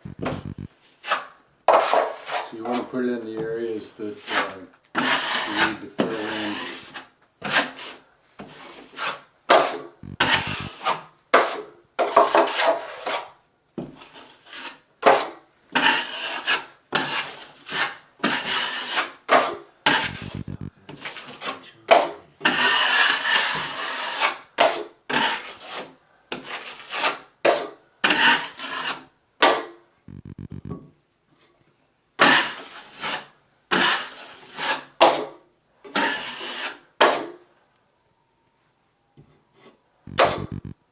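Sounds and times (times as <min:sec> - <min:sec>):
drywall knife scraping: 0:01.0 - 0:03.0, 0:04.1 - 0:20.2, 0:21.0 - 0:29.6, 0:32.2 - 0:37.4.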